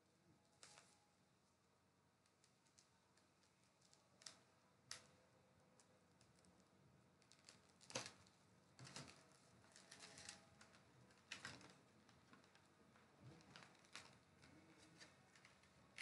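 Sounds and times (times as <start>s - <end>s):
packaging clicks and crinkles: 7.3s - 12.6s, 13.5s - 16.0s.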